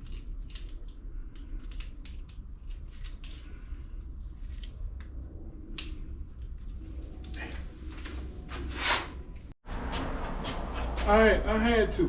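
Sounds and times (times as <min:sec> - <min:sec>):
hand tools clicking on metal: 0:00.0 - 0:03.9
low hum: 0:00.0 - 0:12.0.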